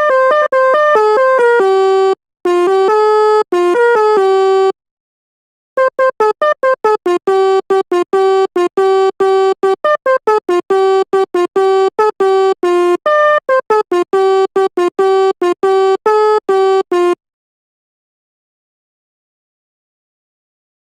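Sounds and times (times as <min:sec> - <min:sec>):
bus horn melody of short notes: 0:00.0 - 0:04.8, 0:05.8 - 0:17.2.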